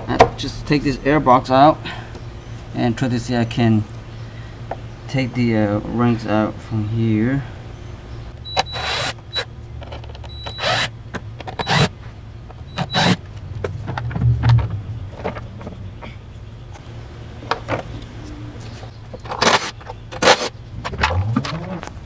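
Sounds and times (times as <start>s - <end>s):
steady low hum: 0.0s - 22.0s
clicks and knocks of tools and plastic parts: 9.8s - 11.9s, 12.5s - 16.8s, 18.8s - 22.0s.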